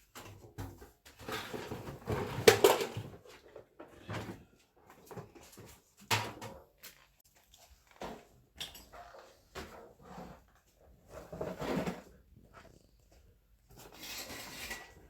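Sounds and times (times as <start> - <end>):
objects knocking and clattering: 0.0 - 10.0.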